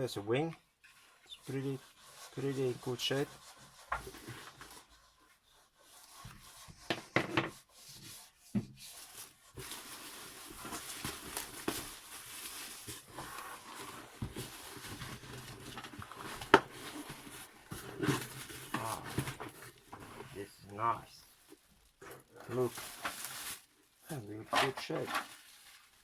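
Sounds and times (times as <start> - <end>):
packaging rustling: 8.9 - 26.0.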